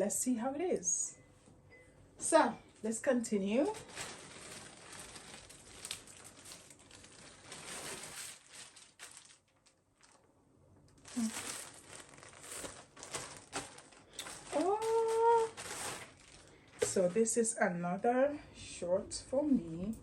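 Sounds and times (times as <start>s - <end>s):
plastic packaging crinkling: 3.5s - 10.3s, 10.9s - 17.5s.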